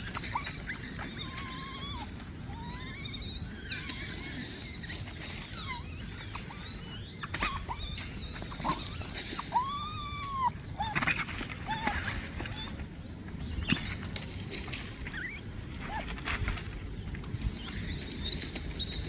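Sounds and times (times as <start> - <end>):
monkeys squealing: 0.0 - 12.8.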